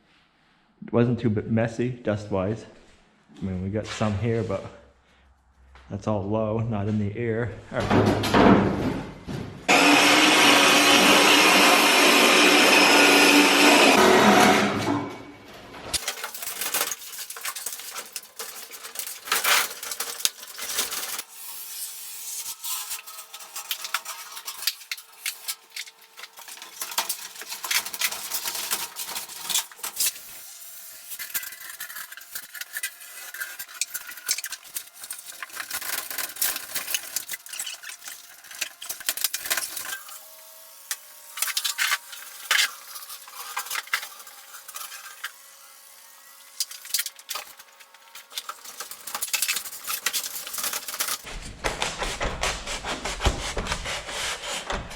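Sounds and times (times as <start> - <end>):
materials scraping and clinking: 14.4 - 51.6.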